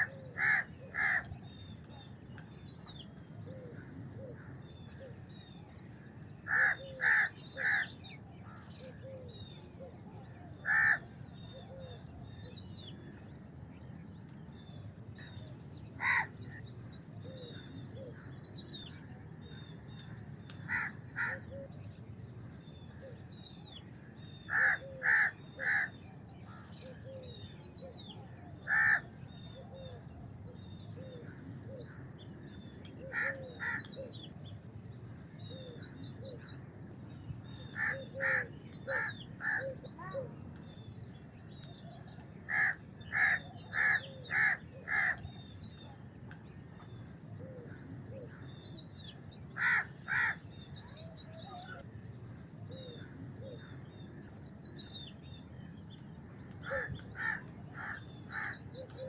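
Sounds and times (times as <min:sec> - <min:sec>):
crows cawing: 0:00.0 - 0:01.3, 0:06.5 - 0:08.0, 0:10.6 - 0:11.1, 0:16.0 - 0:16.3, 0:20.6 - 0:21.5, 0:24.5 - 0:26.0, 0:28.6 - 0:29.1, 0:33.1 - 0:33.9, 0:37.8 - 0:39.8, 0:42.5 - 0:45.2, 0:49.6 - 0:50.5, 0:56.6 - 0:58.9
small birds twittering: 0:00.0 - 0:59.0.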